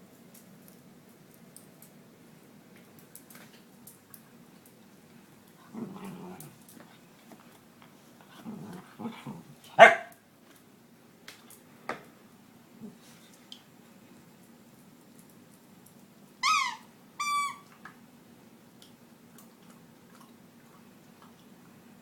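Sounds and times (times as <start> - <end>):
dog growling low: 5.6 - 6.6, 8.2 - 9.6
dog barking loudly: 9.8 - 10.2.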